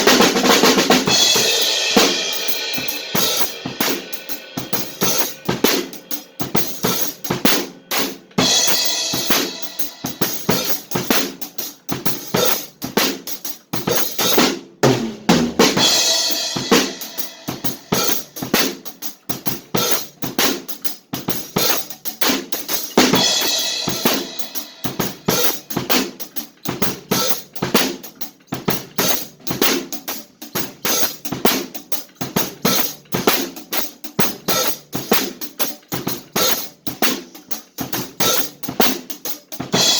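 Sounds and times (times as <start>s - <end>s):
drum kit playing fast rhythm: 0.0s - 39.9s
cymbal crashes: 1.0s - 11.4s, 15.8s - 18.7s, 23.1s - 25.7s.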